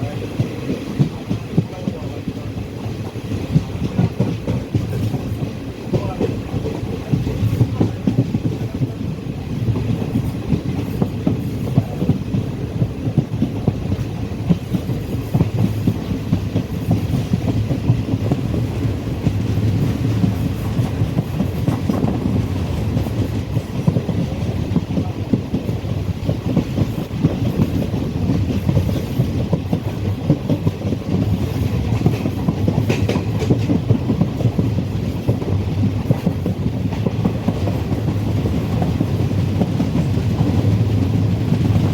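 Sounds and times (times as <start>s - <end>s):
train rumbling on track: 0.0s - 41.9s
wheels knocking on rail joints: 9.6s - 41.9s.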